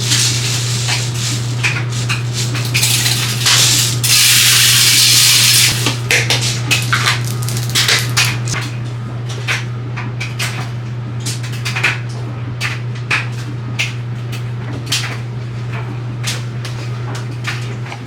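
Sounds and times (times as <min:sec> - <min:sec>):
steady low hum: 0:00.0 - 0:11.2.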